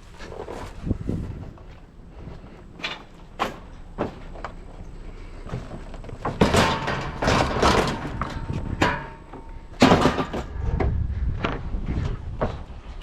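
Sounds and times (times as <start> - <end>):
metal knocking and scraping: 2.7 - 12.7.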